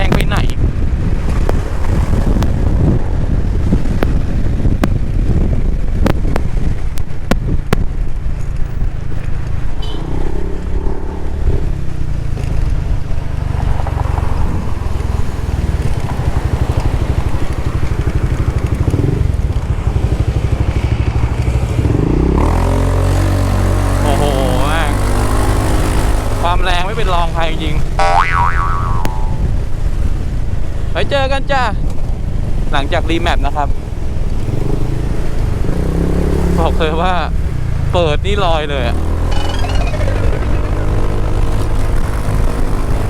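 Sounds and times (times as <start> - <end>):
wind buffeting microphone: 0.0 - 23.8.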